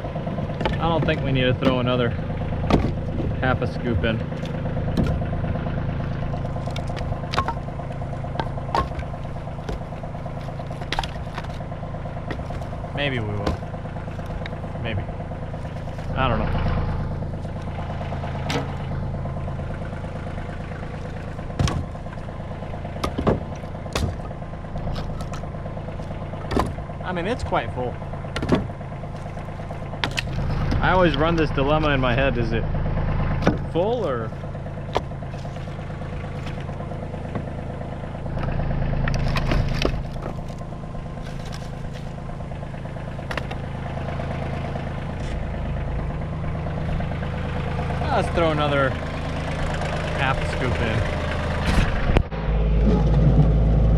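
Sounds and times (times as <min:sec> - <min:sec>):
engine idling: 0:00.0 - 0:53.9
sharp knocks: 0:02.6 - 0:03.5, 0:04.3 - 0:05.3, 0:21.5 - 0:22.0, 0:22.9 - 0:24.3, 0:26.4 - 0:26.8, 0:28.3 - 0:29.4.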